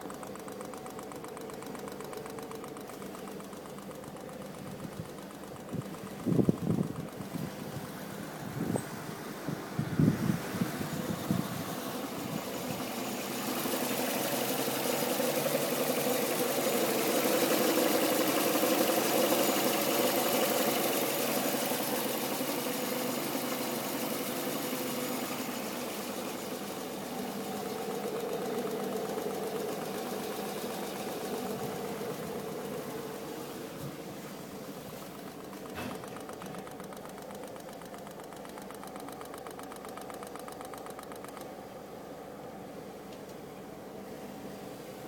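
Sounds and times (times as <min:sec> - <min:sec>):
car engine idling: 0:00.0 - 0:45.0.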